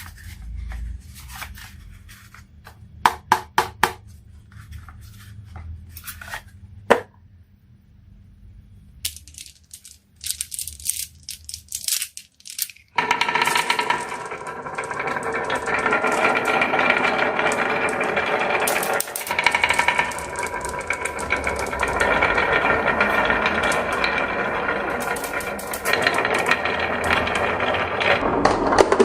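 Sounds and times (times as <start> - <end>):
marbles rolling down wooden run: 9.0 - 29.0.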